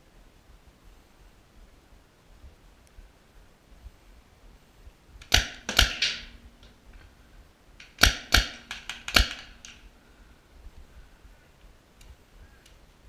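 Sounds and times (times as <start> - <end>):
paintball marker firing: 5.2 - 6.8, 7.8 - 9.9.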